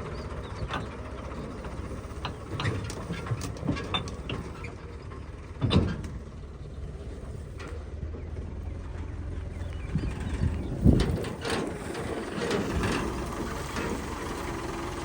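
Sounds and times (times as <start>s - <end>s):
tractor engine running: 0.0s - 15.0s
clanks and knocks: 0.5s - 6.4s, 10.0s - 14.3s.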